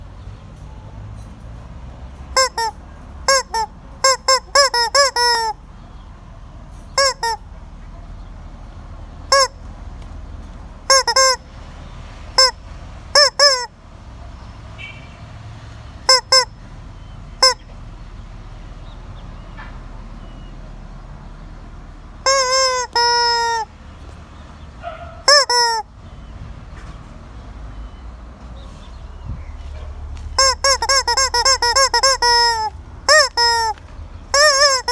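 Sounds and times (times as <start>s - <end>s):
chicken squawking: 2.4s - 5.6s, 7.0s - 7.4s, 9.3s - 9.6s, 10.9s - 11.4s, 12.4s - 12.6s, 13.2s - 13.7s, 16.1s - 16.5s, 17.4s - 17.6s, 22.2s - 23.7s, 24.8s - 25.9s, 30.4s - 34.9s.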